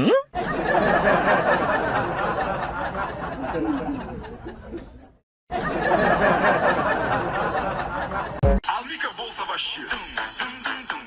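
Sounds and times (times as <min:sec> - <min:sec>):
crowd chattering and laughing: 0:00.4 - 0:08.5.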